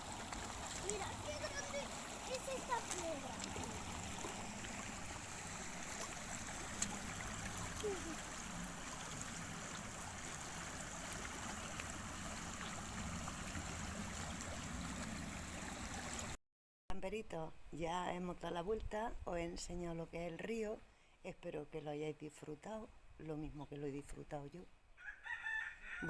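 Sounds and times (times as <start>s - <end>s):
river water rushing: 0.0s - 16.4s.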